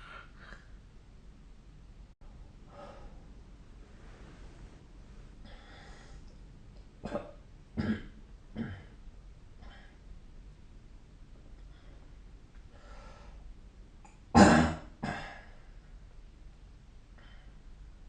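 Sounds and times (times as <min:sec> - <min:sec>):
person breathing faintly: 0:02.6 - 0:03.3, 0:03.9 - 0:06.4, 0:11.6 - 0:13.5
short coughs: 0:07.1 - 0:08.9, 0:14.4 - 0:15.5.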